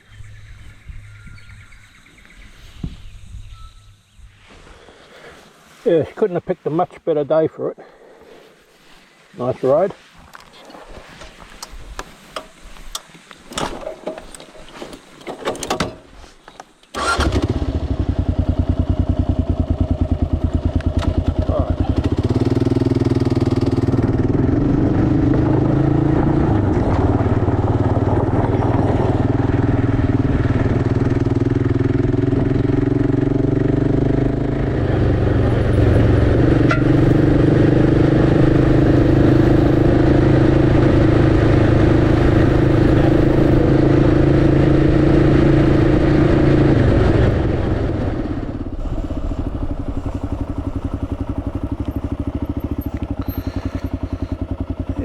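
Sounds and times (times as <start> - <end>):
motorcycle engine running: 17.1 - 55.0.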